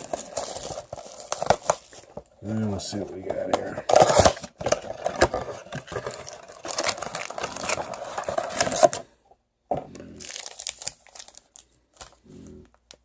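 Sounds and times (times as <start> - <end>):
wrapping crinkling and tearing: 0.0 - 9.0, 10.1 - 12.6.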